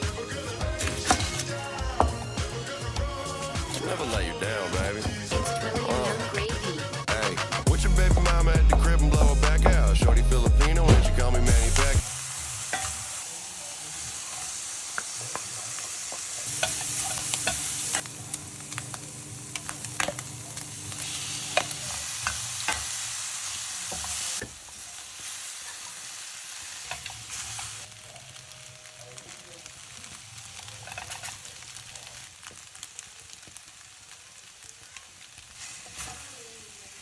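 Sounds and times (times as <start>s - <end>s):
music: 0.0s - 12.1s
food sizzling in a pan: 0.0s - 37.0s
utensil scraping a pan: 30.8s - 31.4s.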